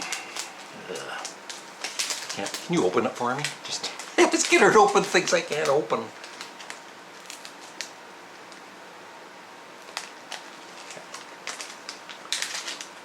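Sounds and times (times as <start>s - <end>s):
candy packet being opened: 0.0s - 8.6s, 9.8s - 13.0s
faint hiss: 0.0s - 9.9s.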